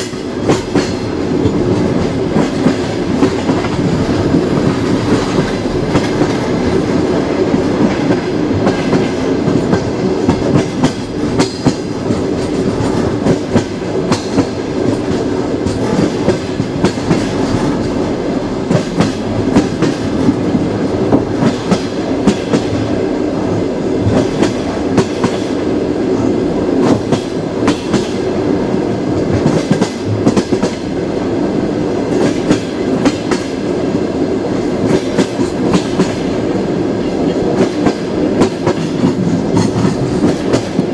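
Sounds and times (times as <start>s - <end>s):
train wheels clattering on rails: 0.0s - 40.9s.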